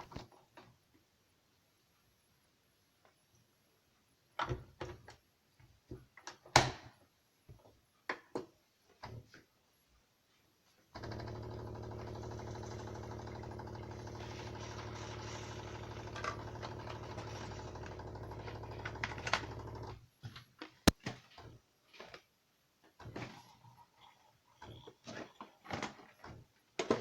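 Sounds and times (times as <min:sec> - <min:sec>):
coffee maker pump humming: 0:11.0 - 0:19.9, 0:23.4 - 0:25.6.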